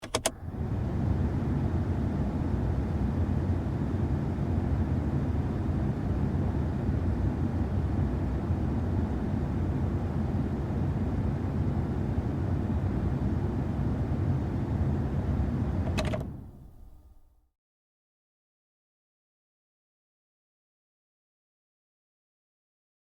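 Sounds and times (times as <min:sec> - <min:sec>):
quick clicks: 0:00.0 - 0:00.3
air rushing from car vents: 0:00.0 - 0:09.0, 0:11.0 - 0:17.0.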